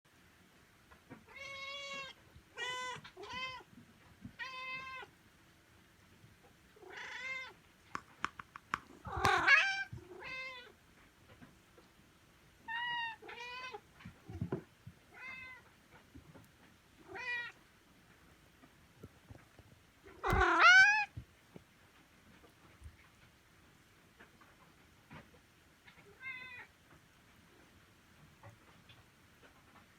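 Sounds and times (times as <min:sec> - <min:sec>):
cats meowing: 0:01.3 - 0:03.6, 0:04.3 - 0:05.1, 0:06.8 - 0:07.6, 0:08.8 - 0:10.7, 0:12.6 - 0:15.7, 0:17.0 - 0:17.6, 0:20.1 - 0:21.2.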